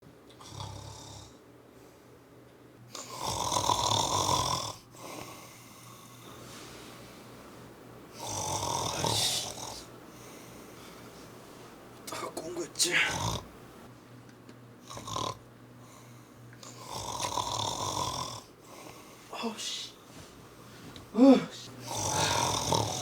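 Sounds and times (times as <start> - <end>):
person snoring: 0.4 - 1.4, 2.9 - 6.4, 8.1 - 10.5, 12.8 - 13.5, 14.8 - 20.0, 21.1 - 23.0.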